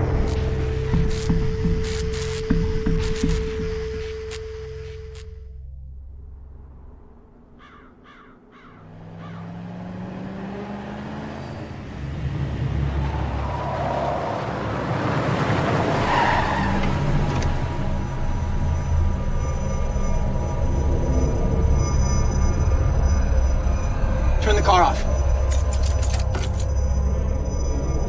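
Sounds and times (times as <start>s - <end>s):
car engine running: 0.0s - 20.5s.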